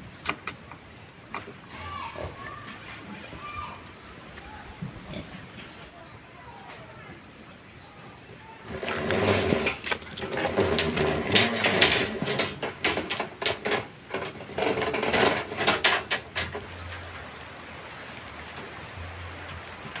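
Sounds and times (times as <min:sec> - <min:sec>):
irregular knocks scrapes and clatter: 0:08.7 - 0:17.4.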